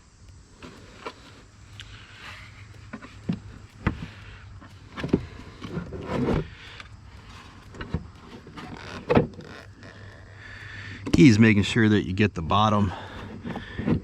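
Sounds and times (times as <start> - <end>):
plastic scraping: 2.3 - 10.7.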